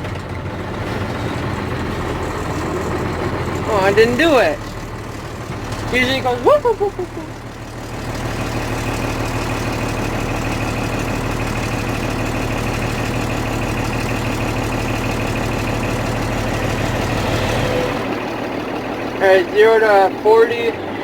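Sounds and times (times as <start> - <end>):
truck diesel engine running: 0.0 - 21.0.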